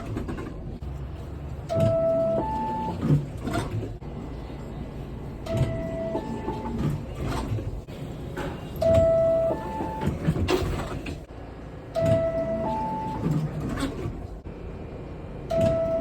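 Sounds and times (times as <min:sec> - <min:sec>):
train clicks and rattles: 0:00.0 - 0:04.0, 0:05.4 - 0:11.3
subway door chime: 0:01.7 - 0:03.2, 0:05.4 - 0:07.1, 0:08.5 - 0:10.6, 0:11.8 - 0:13.5, 0:15.5 - 0:16.0.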